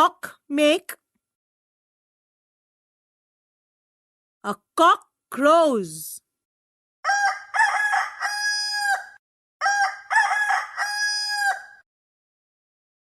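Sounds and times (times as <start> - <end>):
rooster crowing: 7.0 - 11.8.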